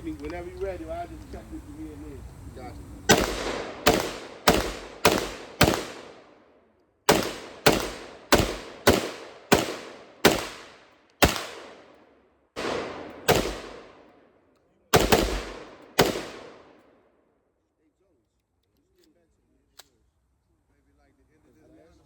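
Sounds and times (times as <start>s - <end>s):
gunshots with ringing tail: 3.1s - 6.4s, 7.1s - 12.0s, 12.6s - 14.1s, 14.9s - 16.8s.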